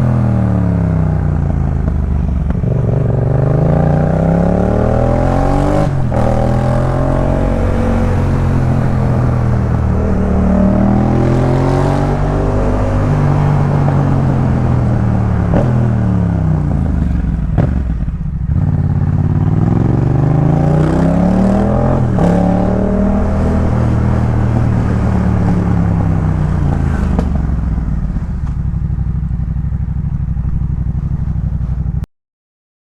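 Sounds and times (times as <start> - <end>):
motorcycle engine revving: 0.0 - 32.0.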